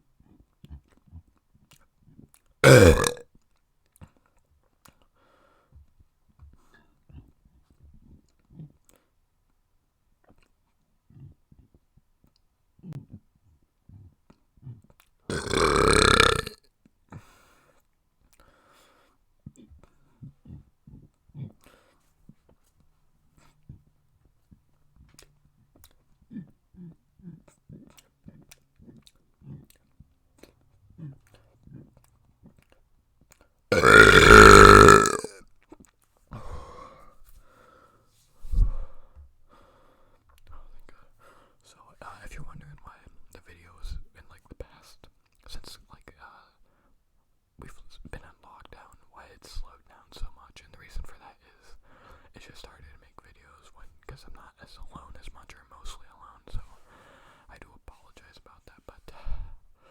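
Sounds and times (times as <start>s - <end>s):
person burping loudly: 2.6s - 3.2s, 15.3s - 16.6s, 33.7s - 35.4s.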